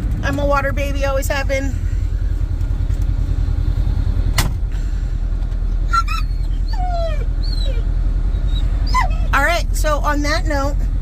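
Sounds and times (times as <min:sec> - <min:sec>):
steady low rumble: 0:00.0 - 0:11.0
dog whining: 0:05.7 - 0:09.4.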